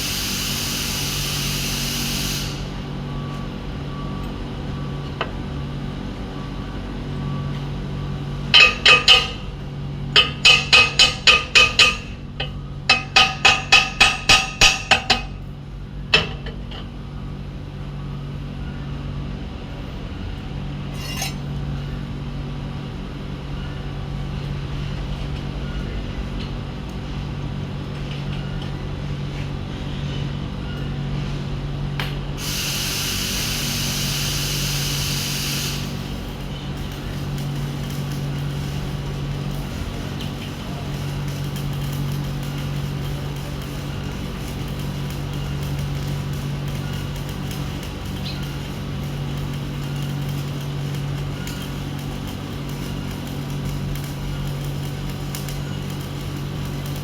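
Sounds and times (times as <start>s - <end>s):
loud hiss-like noise: 0.0s - 3.1s, 32.4s - 57.0s
steady low hum: 2.6s - 57.0s
hammer rapping on steel pipe: 8.6s - 9.4s, 10.2s - 12.2s, 12.9s - 15.4s.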